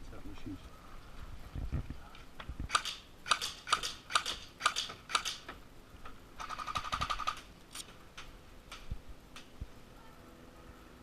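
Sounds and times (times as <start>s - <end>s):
airsoft rifle clicking: 2.7s - 5.6s.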